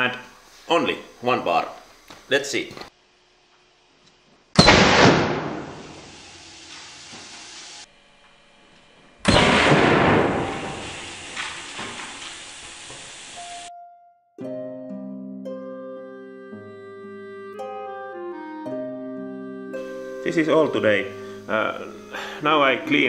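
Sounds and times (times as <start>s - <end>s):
air cannon blast: 4.6s - 7.4s, 9.3s - 12.3s
hiss of escaping air: 5.6s - 7.9s, 10.2s - 13.7s.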